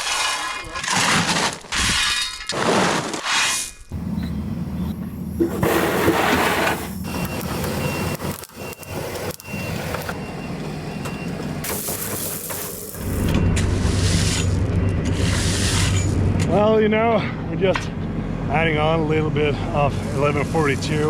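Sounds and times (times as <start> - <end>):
excavator diesel engine running: 4.0 - 21.0
high warning beeper: 6.9 - 11.3.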